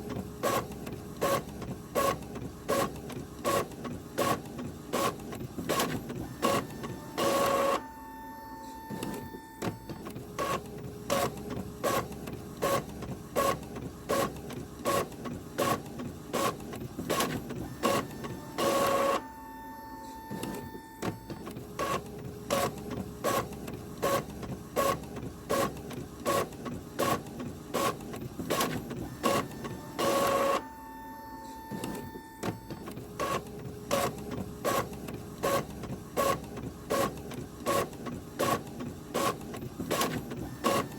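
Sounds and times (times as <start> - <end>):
printer whirring: 0.0 - 40.9
printer mechanical clicks: 8.8 - 19.3, 20.2 - 30.7, 31.5 - 40.9
printer motor burst: 27.8 - 30.7.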